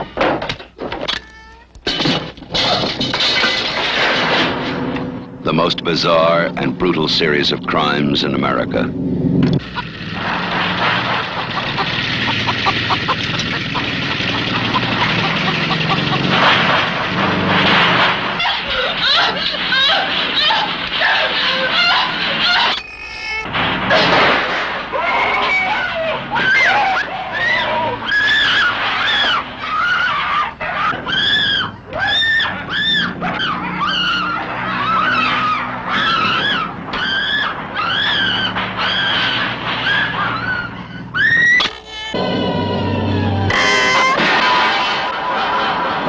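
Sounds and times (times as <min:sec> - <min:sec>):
engine running: 0:03.8 - 0:22.5, 0:31.7 - 0:46.0
low drone: 0:04.6 - 0:18.4, 0:42.1 - 0:44.2.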